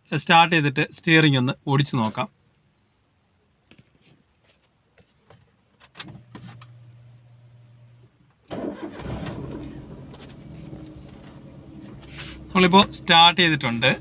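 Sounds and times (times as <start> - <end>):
car engine starting and idling: 8.5 - 14.0.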